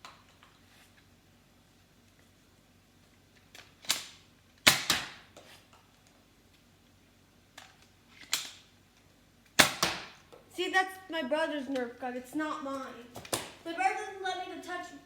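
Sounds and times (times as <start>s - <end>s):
toy blaster clacks and pops: 3.6s - 5.2s, 9.6s - 10.2s.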